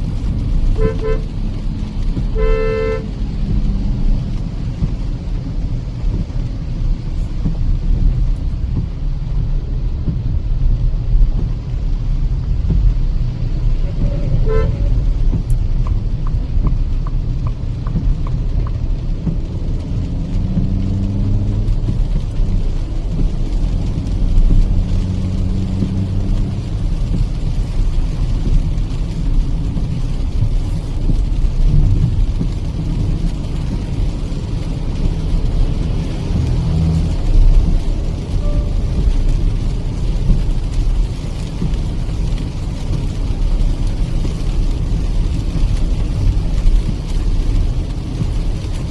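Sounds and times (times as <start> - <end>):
car engine: 0.0 - 48.9
road and tyre rumble: 0.0 - 48.9
turn indicator ticking: 0.2 - 48.9
vehicle horn toot: 0.8 - 1.3, 2.4 - 3.1, 13.8 - 15.0, 38.4 - 38.8.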